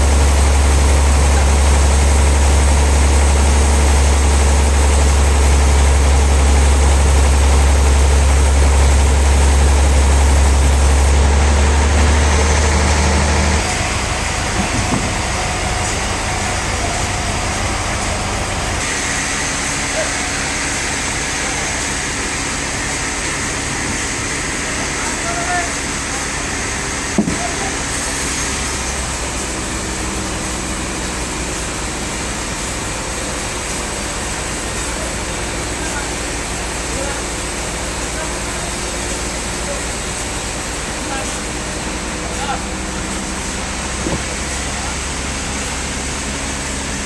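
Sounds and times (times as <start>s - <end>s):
heavy engine low hum: 0.0s - 47.0s.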